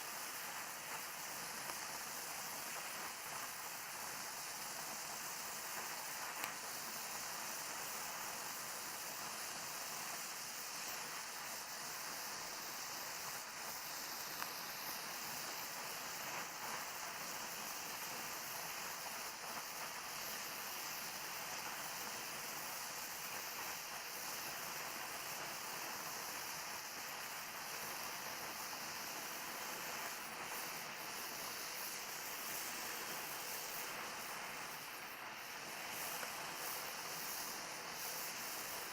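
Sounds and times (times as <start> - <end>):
torch flame hissing: 0.0 - 38.9
faint click: 6.4 - 6.6.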